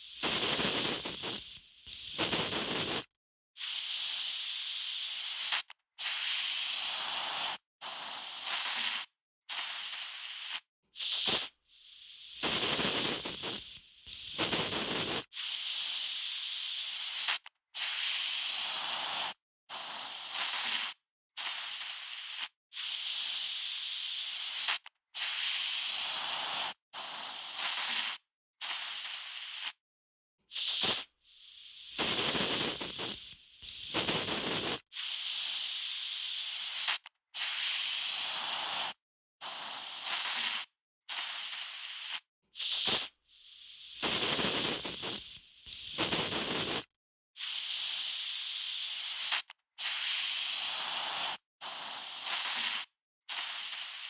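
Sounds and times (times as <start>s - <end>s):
aerosol spray can hissing: 0.0s - 29.8s, 30.5s - 54.0s.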